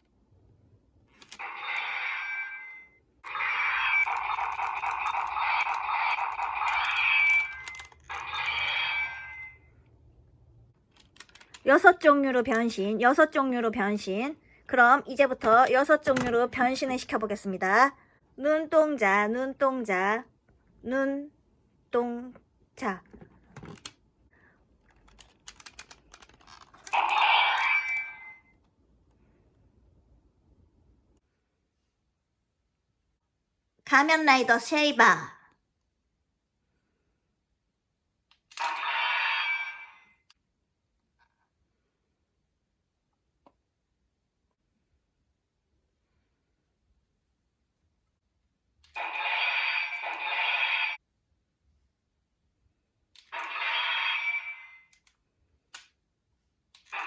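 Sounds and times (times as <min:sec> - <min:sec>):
toy sword electronic sound effects: 0:03.3 - 0:09.5, 0:38.6 - 0:40.0, 0:49.0 - 0:51.0.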